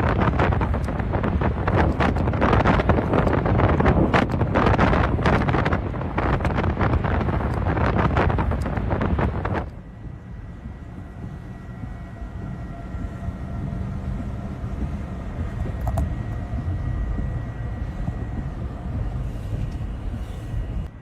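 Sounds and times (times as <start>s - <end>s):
tornado wind rumbling: 0.0s - 21.0s.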